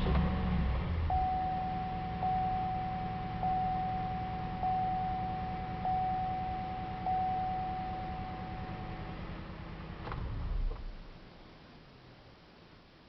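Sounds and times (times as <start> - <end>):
faint steady hum: 0.0 - 13.0
car warning chime dinging: 1.1 - 9.4.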